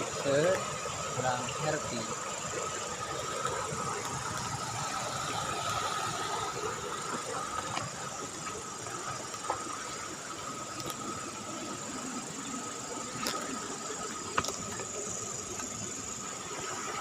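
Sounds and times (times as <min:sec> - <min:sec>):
night insect chorus: 0:00.0 - 0:17.0
river water running: 0:00.0 - 0:17.0.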